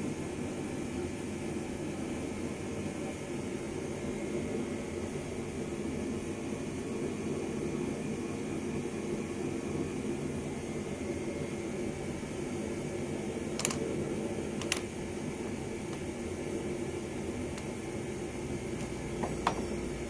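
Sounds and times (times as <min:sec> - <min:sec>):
fan-like hum: 0:00.0 - 0:20.0
sharp clicks of metal parts: 0:13.6 - 0:13.8.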